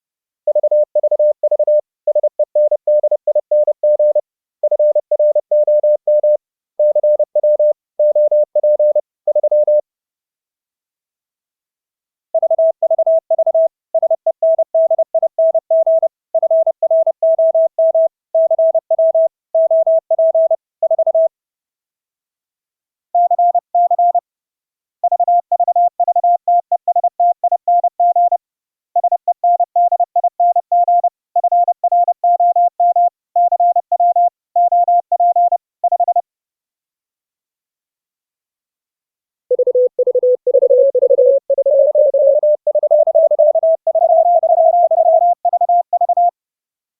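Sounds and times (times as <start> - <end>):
morse code tones: 39.5 - 46.3.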